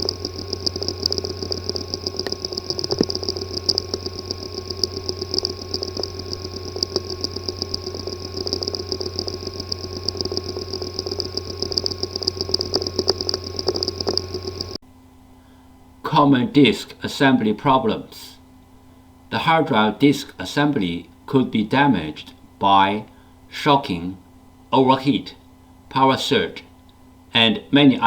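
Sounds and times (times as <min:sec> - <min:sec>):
hard drive ticking: 0:00.0 - 0:14.8
hard drive hum and whine: 0:00.0 - 0:28.0.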